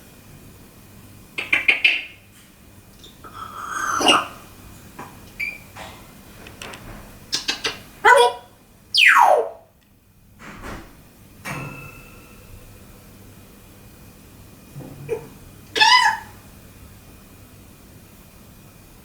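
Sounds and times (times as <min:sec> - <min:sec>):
parrot calling and clicking: 0:01.4 - 0:02.2, 0:07.3 - 0:08.4, 0:09.0 - 0:09.6, 0:15.1 - 0:16.4.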